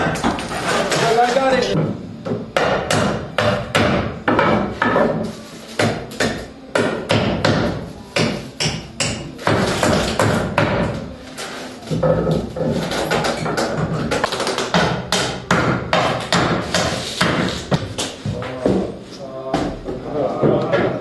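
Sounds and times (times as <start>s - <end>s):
hammer striking wood: 1.8s - 5.1s, 5.8s - 11.0s, 12.1s - 18.1s.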